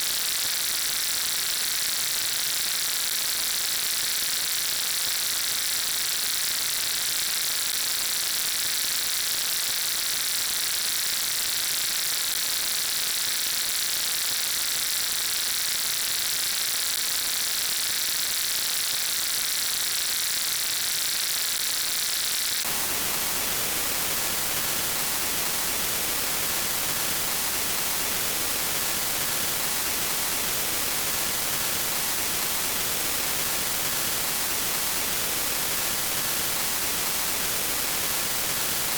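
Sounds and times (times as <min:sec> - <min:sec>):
static hiss: 0:19.1 - 0:38.9.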